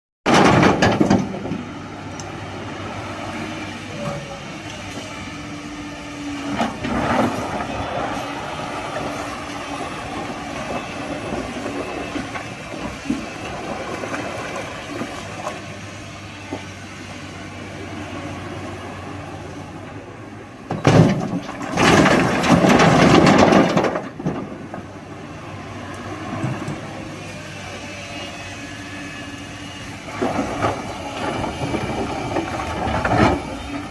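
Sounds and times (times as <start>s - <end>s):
boulders crashing into steel truck bed: 0.3s - 1.4s, 20.8s - 24.6s
excavator diesel engine running: 0.3s - 33.9s.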